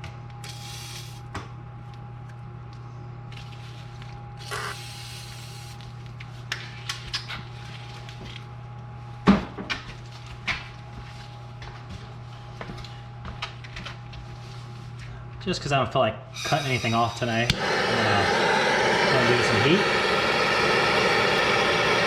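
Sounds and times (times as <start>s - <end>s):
steady hum: 16.4s - 22.0s.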